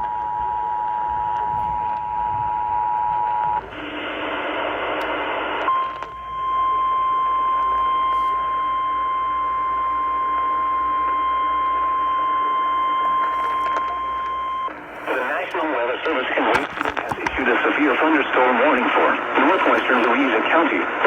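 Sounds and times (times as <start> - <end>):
steady warning alarm tone: 0.0 - 3.7, 5.7 - 15.8
radio static: 0.8 - 6.2, 11.0 - 21.0.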